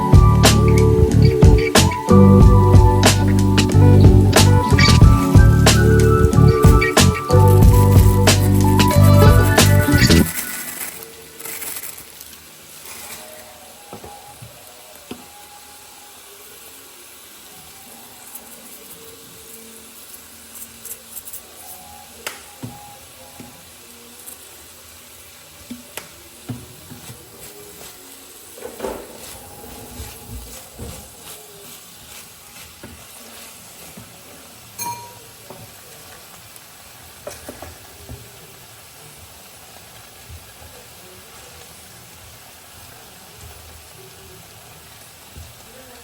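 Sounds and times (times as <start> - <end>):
utensil stirring: 0.0 - 13.2, 26.4 - 35.2
food sizzling in a pan: 0.0 - 46.0.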